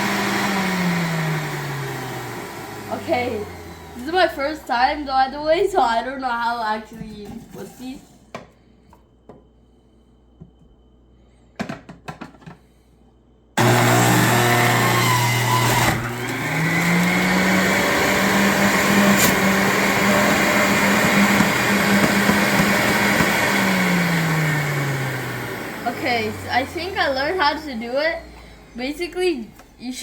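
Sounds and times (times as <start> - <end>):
juice extractor motor whirring: 0.0 - 5.3, 13.6 - 29.9.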